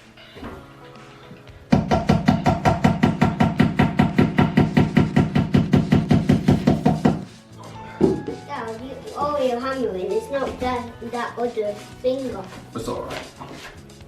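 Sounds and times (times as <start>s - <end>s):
hammer striking desk parts: 1.7s - 7.3s.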